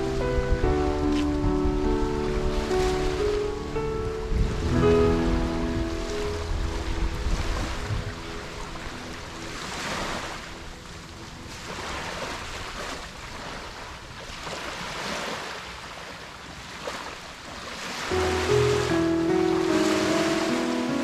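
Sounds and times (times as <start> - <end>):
background music: 0.0 - 12.5, 18.1 - 21.0
small waves washing onto beach: 0.0 - 21.0.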